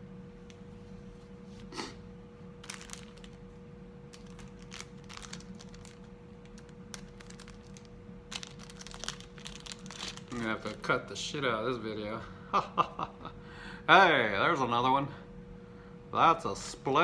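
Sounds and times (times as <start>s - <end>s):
faint hum: 0.0s - 17.0s
plastic packaging rustling: 2.6s - 11.2s.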